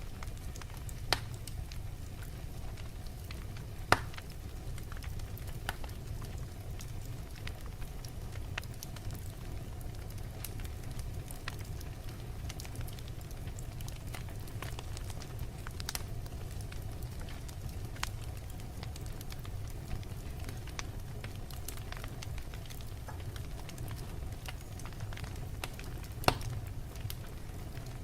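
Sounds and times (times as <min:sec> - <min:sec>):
wood fire crackling: 0:00.0 - 0:28.0
sharp pops from fire: 0:00.2 - 0:07.6, 0:20.2 - 0:27.8.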